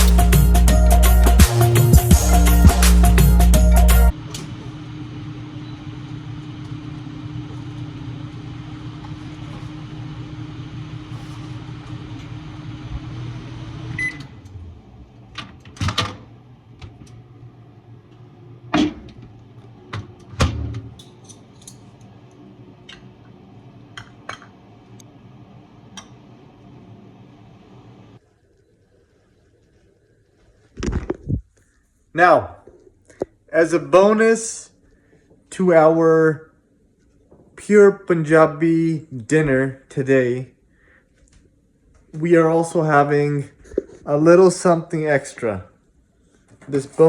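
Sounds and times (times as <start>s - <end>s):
microwave oven humming: 0.0s - 29.1s
microwave beep: 4.2s - 11.4s, 13.8s - 14.4s.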